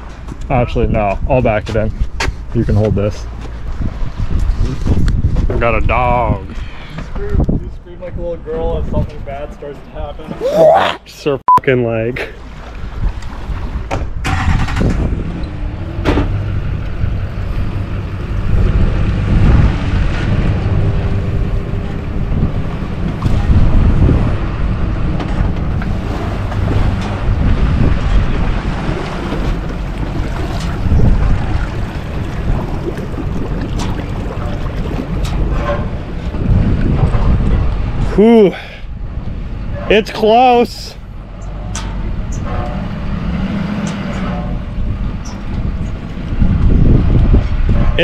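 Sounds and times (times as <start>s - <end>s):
wind buffeting microphone: 0.0s - 9.5s, 12.6s - 38.2s, 38.8s - 39.9s, 41.9s - 48.0s
vehicle engine low rumble: 14.1s - 39.8s, 41.0s - 48.0s.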